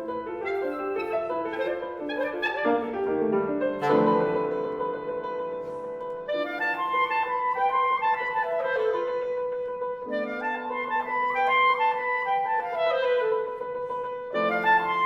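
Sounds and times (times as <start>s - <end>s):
clarinet: 0.0s - 15.0s
piano: 0.0s - 15.0s.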